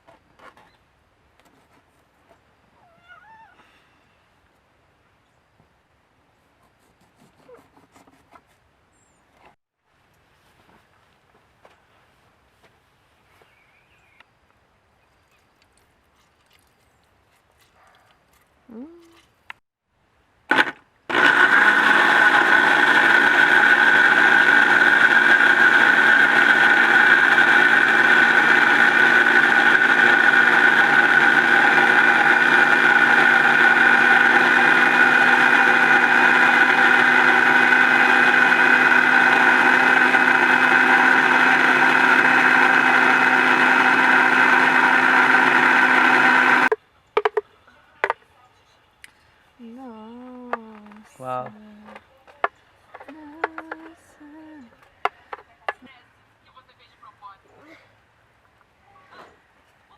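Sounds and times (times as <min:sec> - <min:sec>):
electric blender running: 0:20.5 - 0:46.8.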